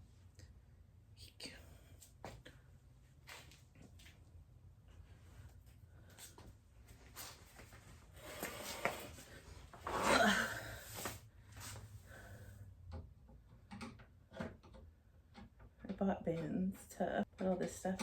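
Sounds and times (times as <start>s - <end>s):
handling knocks and clicks: 12.8s - 18.0s.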